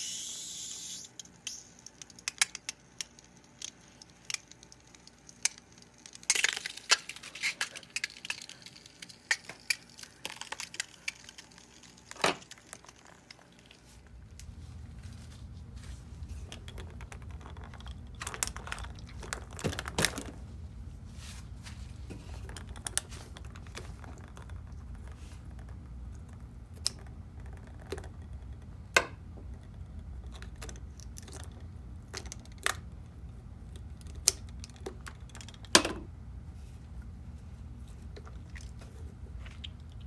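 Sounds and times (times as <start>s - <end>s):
sharp clicks and crinkly crackles: 1.8s - 35.8s
steady low hum: 14.0s - 40.0s.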